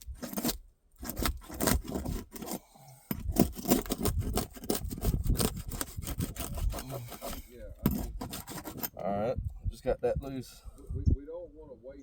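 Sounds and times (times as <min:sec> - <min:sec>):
roof shingle scraping: 0:00.0 - 0:09.0.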